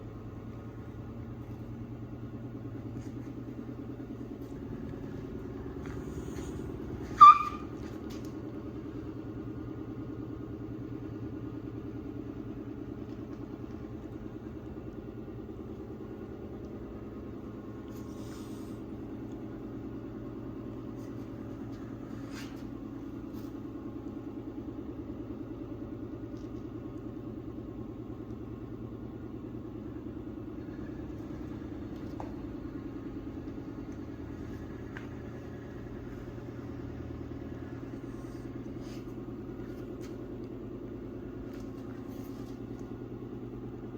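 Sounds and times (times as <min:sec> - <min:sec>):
motorcycle engine running: 0:00.0 - 0:09.8
sharp high-pitched squeak: 0:06.1 - 0:07.9.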